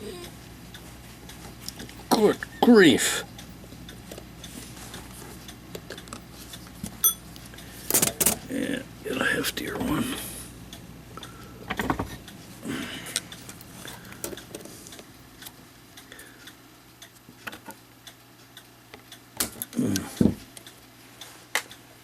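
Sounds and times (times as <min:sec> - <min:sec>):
metallic clicks of hand tools: 0:07.9 - 0:08.5.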